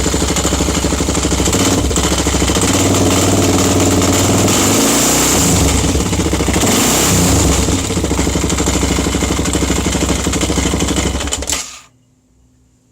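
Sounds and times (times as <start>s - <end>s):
motorcycle engine revving and idling: 0.0s - 11.8s.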